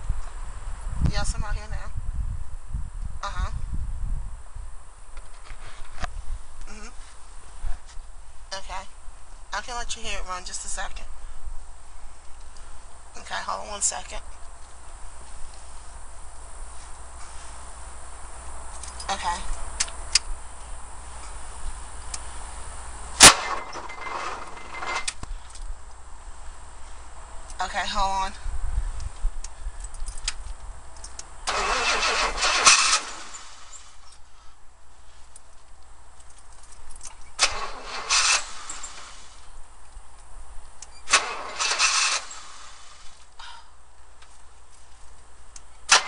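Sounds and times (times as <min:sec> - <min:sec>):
low steady hum: 0:00.0 - 0:46.0
faint rustling: 0:14.2 - 0:27.2, 0:44.0 - 0:45.8
car engine bursts: 0:22.1 - 0:25.2, 0:31.4 - 0:34.2, 0:37.3 - 0:39.5, 0:40.8 - 0:43.5, 0:45.8 - 0:46.0
sharp metallic clang: 0:23.2 - 0:25.2.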